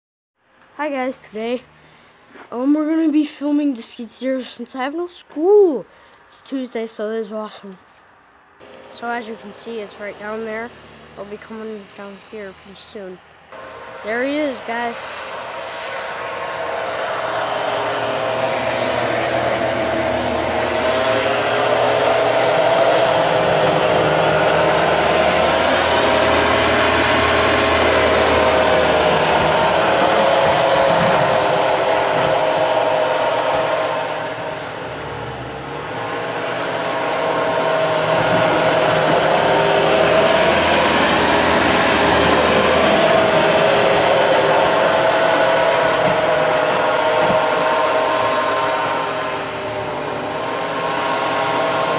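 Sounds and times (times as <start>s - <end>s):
steady high whine: 0.5s - 51.9s
skid steer engine running hard: 8.2s - 12.7s, 13.4s - 51.9s.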